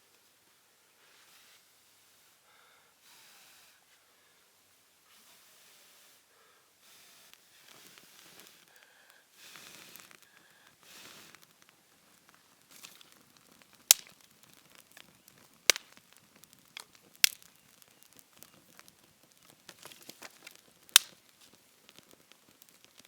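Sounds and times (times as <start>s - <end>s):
faint crackling and rustling: 3.6s - 23.0s
wood cracking: 9.6s - 23.0s.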